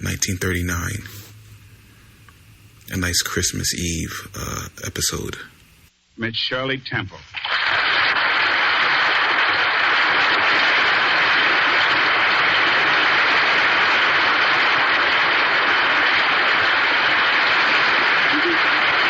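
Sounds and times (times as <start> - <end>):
audience applauding: 7.4 - 19.0.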